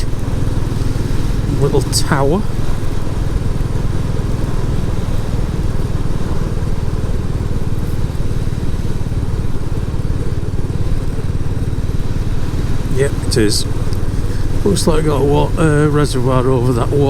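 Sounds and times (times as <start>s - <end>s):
motorcycle engine running: 0.0s - 17.0s.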